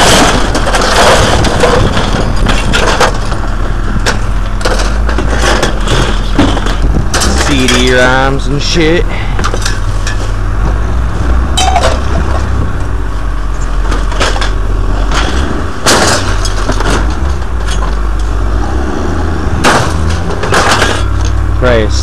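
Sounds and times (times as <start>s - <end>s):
scrap metal crashing onto pile: 0.0s - 8.5s, 13.7s - 18.0s, 19.6s - 21.4s
steady low rumble: 0.0s - 22.0s.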